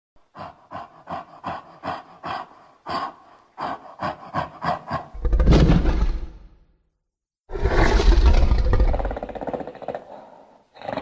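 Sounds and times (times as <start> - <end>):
monster breathy huffs: 0.2 - 5.2
monster roar: 7.5 - 10.1.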